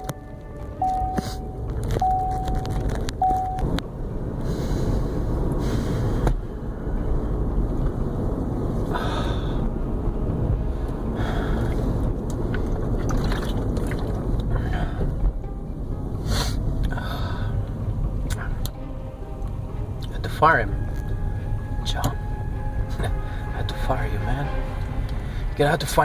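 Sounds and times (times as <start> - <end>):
steady beeping tone: 0.0 - 3.7
motor vehicle rumbling: 0.0 - 26.0.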